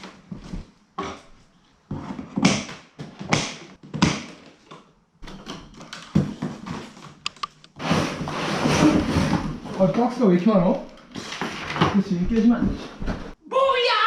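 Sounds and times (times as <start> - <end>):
sharp clicks: 7.2 - 7.8.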